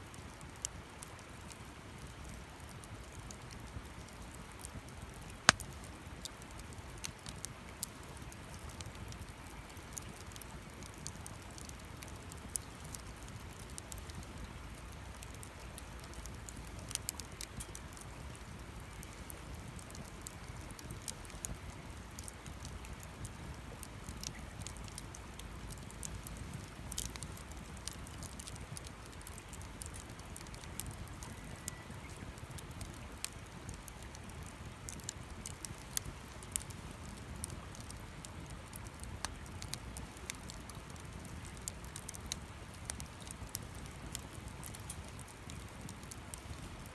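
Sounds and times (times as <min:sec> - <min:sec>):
campfire crackling and popping: 0:00.1 - 0:46.9.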